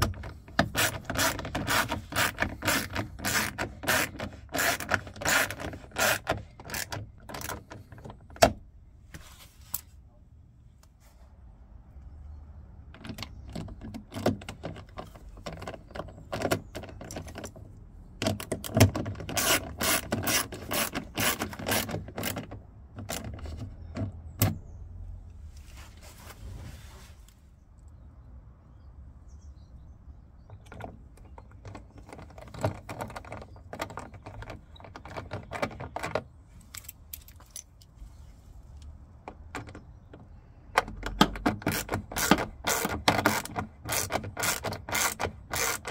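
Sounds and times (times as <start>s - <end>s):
rapid mechanical clicking: 41.1s - 45.9s.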